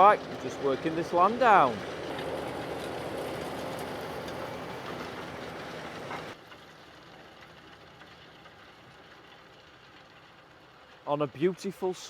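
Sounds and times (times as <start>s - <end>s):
tractor engine under load: 0.0s - 6.4s.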